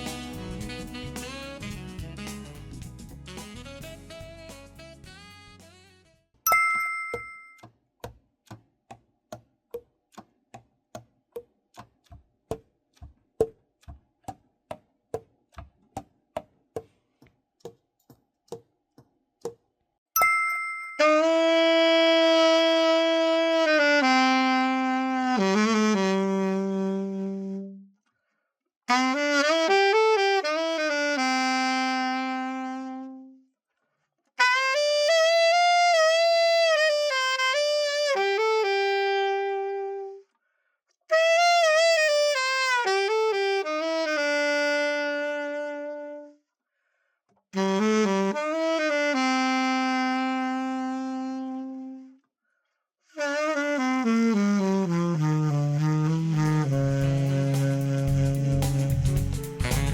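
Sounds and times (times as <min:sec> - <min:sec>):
alto saxophone solo: 0:00.0 - 0:06.4, 0:21.0 - 0:28.0, 0:28.9 - 0:33.5, 0:34.4 - 0:40.3, 0:41.1 - 0:46.4, 0:47.6 - 0:52.2, 0:53.1 - 0:59.9.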